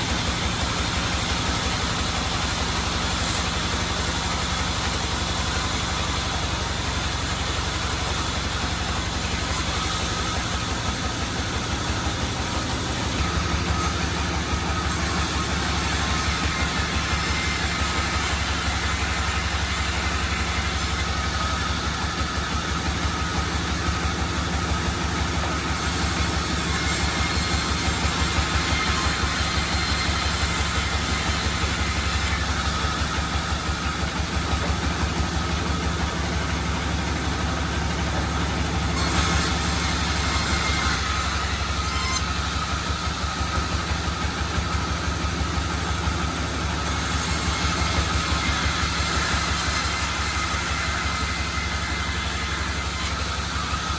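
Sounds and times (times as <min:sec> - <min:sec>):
sawmill machinery throbbing: 0:00.0 - 0:53.9.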